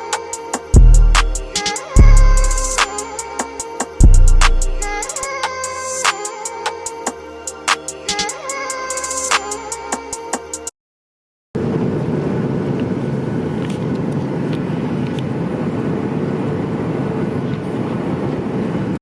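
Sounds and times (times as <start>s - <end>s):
airliner cabin engine noise: 11.6s - 19.0s.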